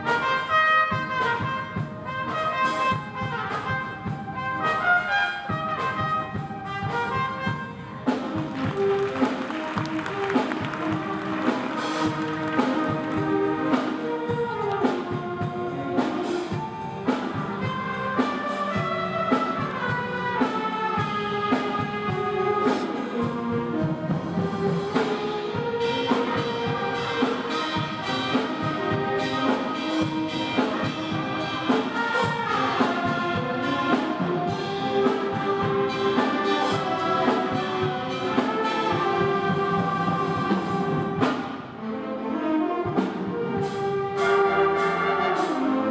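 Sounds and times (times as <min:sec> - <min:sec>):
brass instruments melody: 0:00.0 - 0:45.9
drum hits: 0:06.2 - 0:15.6.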